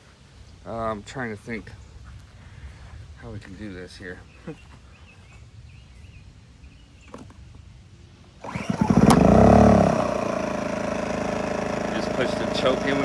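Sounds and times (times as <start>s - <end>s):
generator engine running: 8.4s - 13.0s
generator pull start: 8.4s - 13.0s.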